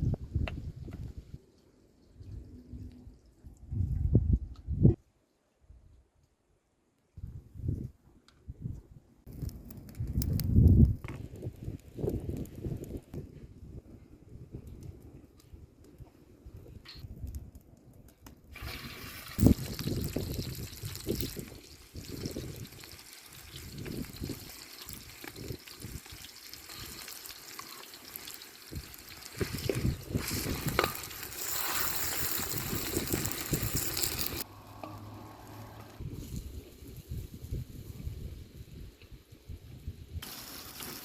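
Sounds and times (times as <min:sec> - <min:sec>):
water pouring and splashing: 0:18.5 - 0:34.5.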